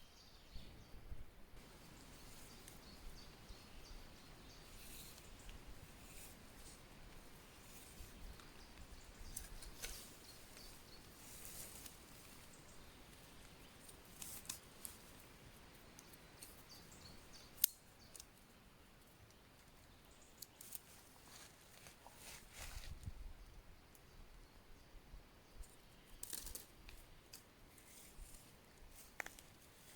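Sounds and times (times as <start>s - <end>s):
faint small clicks and crackles: 4.4s - 23.1s, 25.6s - 29.9s.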